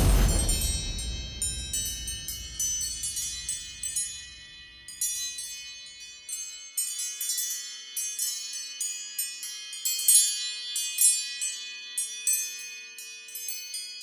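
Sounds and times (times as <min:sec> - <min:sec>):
low rumble: 0:00.0 - 0:04.2.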